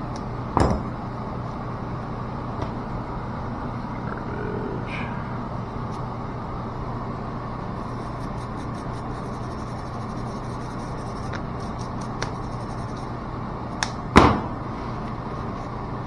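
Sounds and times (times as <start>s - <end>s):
boiler room equipment hum: 0.0s - 16.0s.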